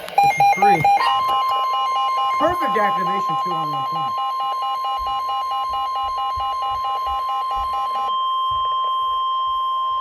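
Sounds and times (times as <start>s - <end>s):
steady alarm tone: 0.1s - 10.0s
rapid pulsing electronic beep: 0.2s - 8.1s
steady high beep: 0.2s - 10.0s.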